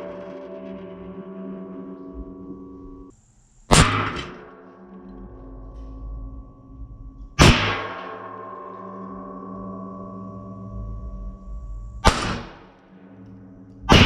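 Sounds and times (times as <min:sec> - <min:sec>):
steady ringing: 0:00.0 - 0:14.0
pistol shots: 0:12.0 - 0:12.6.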